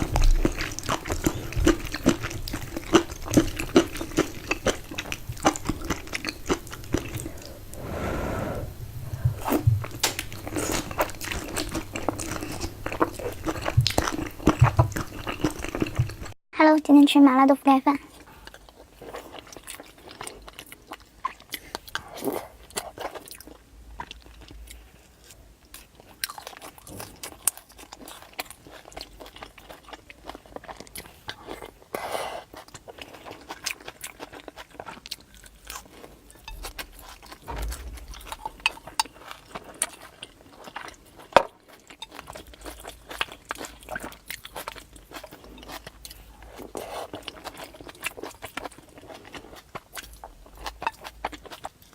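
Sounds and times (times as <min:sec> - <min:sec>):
person biting and chewing food: 0:00.0 - 0:08.0, 0:09.4 - 0:16.3.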